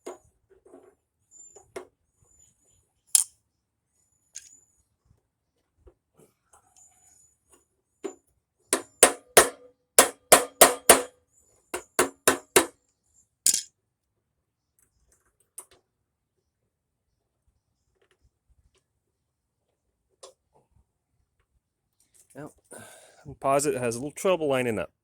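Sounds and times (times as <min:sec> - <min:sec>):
sharp ringing knocks: 0:08.8 - 0:11.1, 0:11.8 - 0:12.7.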